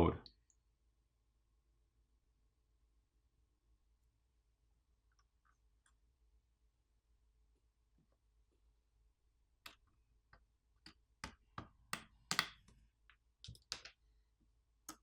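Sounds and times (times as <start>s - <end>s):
clicks and taps of small tools: 9.7s - 14.0s.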